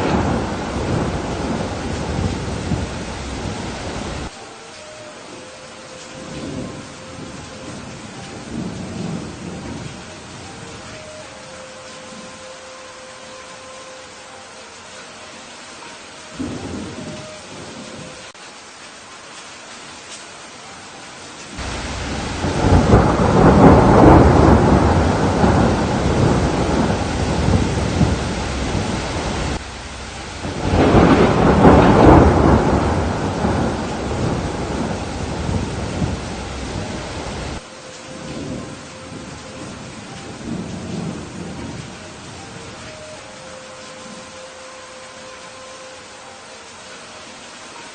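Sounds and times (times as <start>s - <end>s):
thunder rolling: 0.0s - 4.3s, 6.2s - 10.9s, 21.6s - 42.8s
heavy rain: 0.0s - 47.9s.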